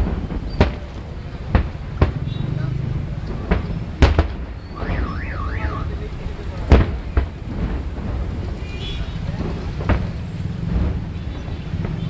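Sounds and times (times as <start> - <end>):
firework bang: 0.0 - 12.0
car alarm warbling siren: 4.7 - 6.1.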